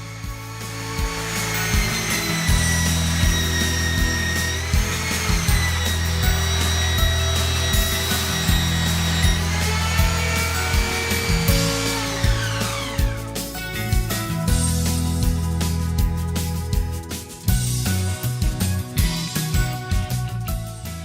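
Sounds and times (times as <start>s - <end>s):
belt sander whining: 0.0s - 14.6s
background music with beat: 0.0s - 21.0s.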